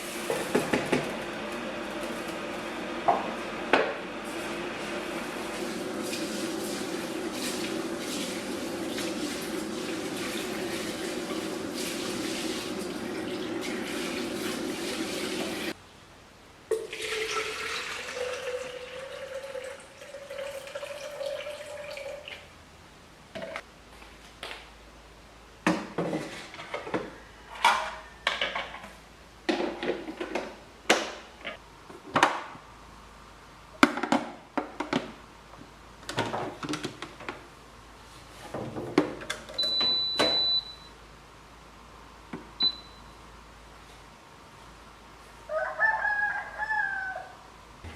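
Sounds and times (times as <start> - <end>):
running tap water: 5.2 - 15.8
water pouring into container: 16.9 - 22.3
high beep: 39.6 - 40.9, 42.6 - 43.1.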